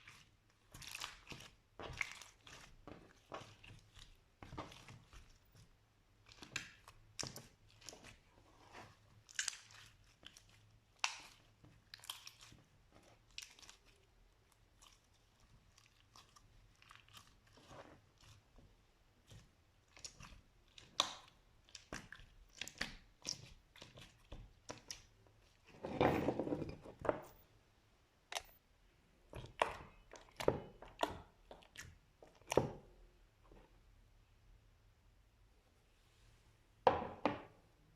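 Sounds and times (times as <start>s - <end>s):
slime crackling and popping: 9.2s - 12.6s.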